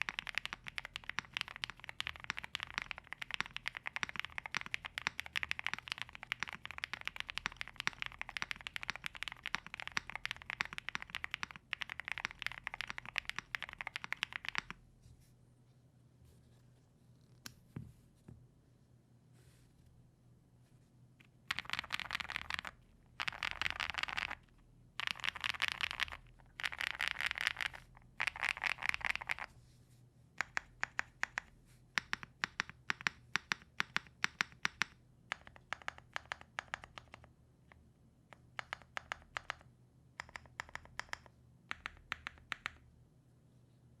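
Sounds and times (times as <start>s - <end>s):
mechanical keyboard typing: 0.0s - 14.8s, 21.5s - 29.5s, 30.4s - 37.3s, 38.3s - 42.8s.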